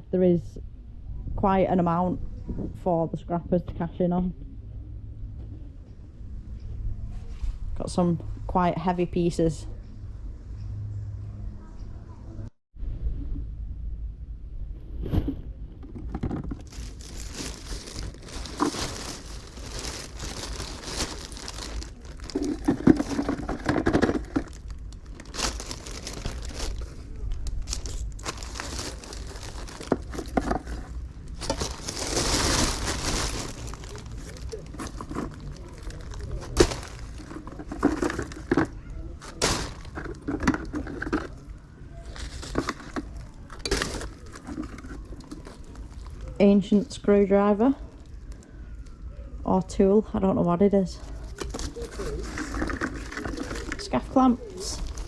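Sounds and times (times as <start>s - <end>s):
bags crinkling and rustling: 15.0s - 47.0s, 51.0s - 55.0s.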